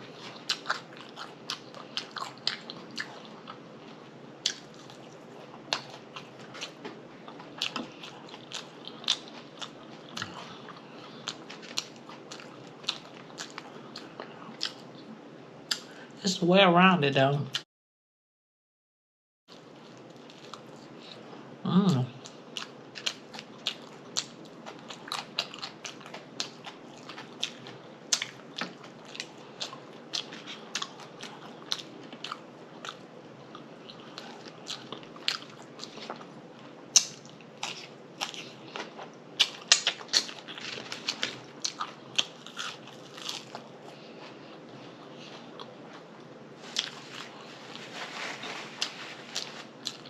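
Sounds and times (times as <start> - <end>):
chewing and lip smacking: 0.1 - 3.6, 4.4 - 15.0, 22.2 - 46.1, 48.8 - 50.0.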